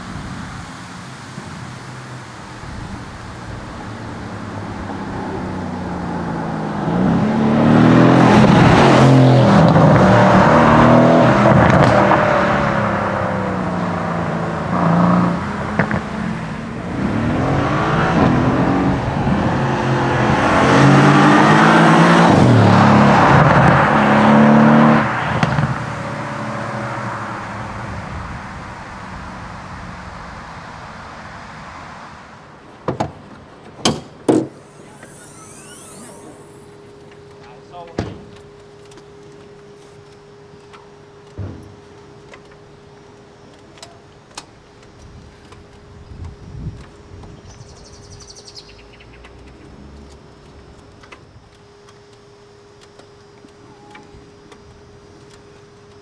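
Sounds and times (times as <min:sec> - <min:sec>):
car engine accelerating hard: 0:00.0 - 0:32.6, 0:34.5 - 0:37.1, 0:48.8 - 0:51.0.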